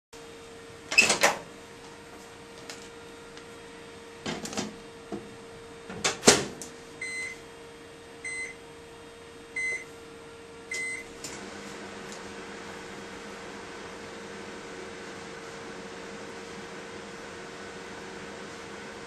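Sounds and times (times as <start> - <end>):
microwave oven humming: 0.2 - 19.0
microwave door shutting: 0.9 - 1.5, 5.9 - 6.6
keypad beeps: 8.2 - 8.6, 9.6 - 9.8, 10.7 - 11.0.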